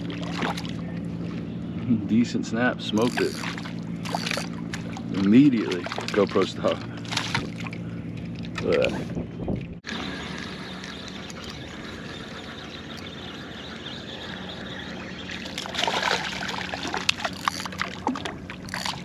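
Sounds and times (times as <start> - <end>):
water splashing: 0.0 - 1.5, 2.9 - 8.8, 15.3 - 19.0
water trickling and lapping: 0.0 - 19.0.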